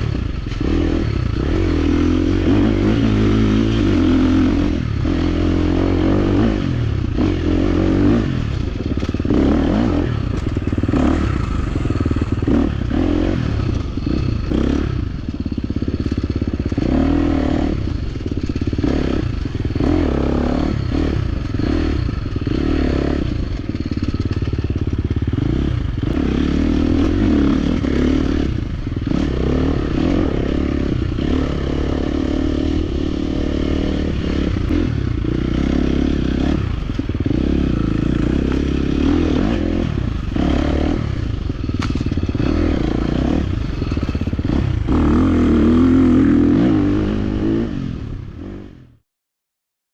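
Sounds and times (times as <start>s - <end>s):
dirt bike engine revving: 0.0s - 49.0s
bike clattering over rough ground: 41.6s - 42.5s.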